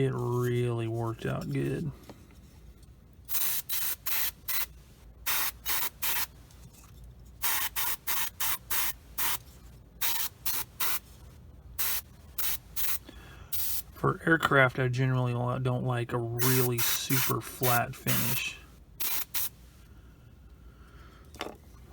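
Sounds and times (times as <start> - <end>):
airbrush spraying hiss: 11.8 - 13.0, 13.6 - 13.9, 16.4 - 19.6.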